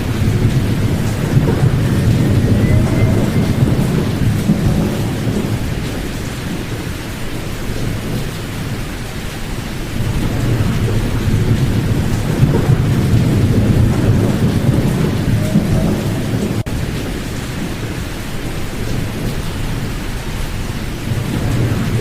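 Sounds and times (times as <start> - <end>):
deep pink noise rushing: 0.0 - 8.8, 9.8 - 17.7.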